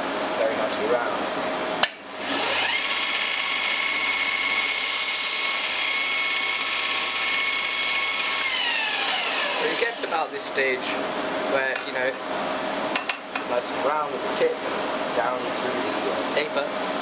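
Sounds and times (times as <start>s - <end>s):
belt grinder motor whine: 2.2s - 10.2s.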